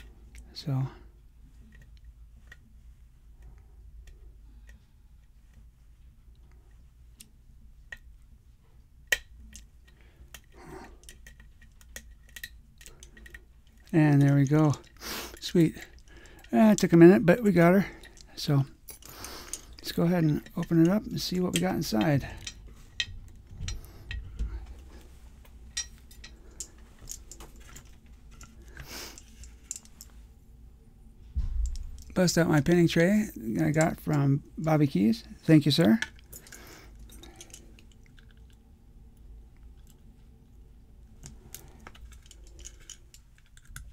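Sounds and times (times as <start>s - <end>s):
metallic clicks of lock picks: 9.0s - 24.4s, 35.6s - 38.6s, 41.2s - 43.9s.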